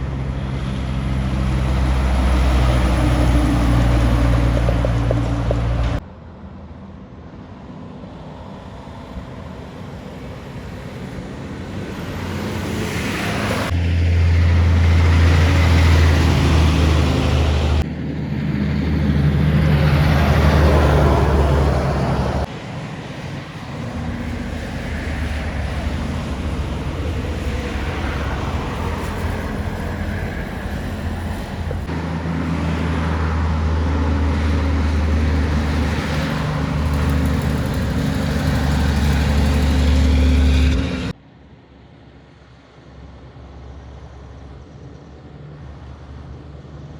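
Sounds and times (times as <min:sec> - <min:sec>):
heavy trucks driving past: 0:00.0 - 0:06.1, 0:10.2 - 0:41.2
road noise: 0:00.0 - 0:46.9.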